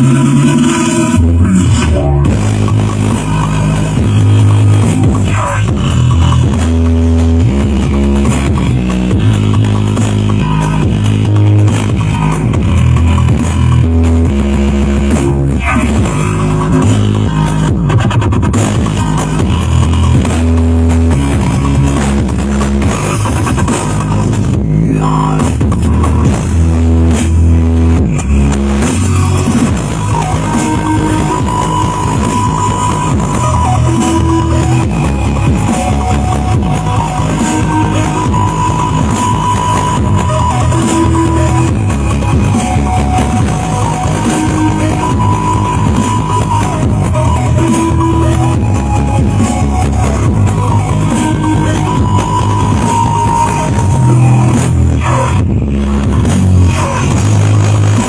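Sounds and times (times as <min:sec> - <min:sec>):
loud electronic music: 0:00.0 - 0:58.0.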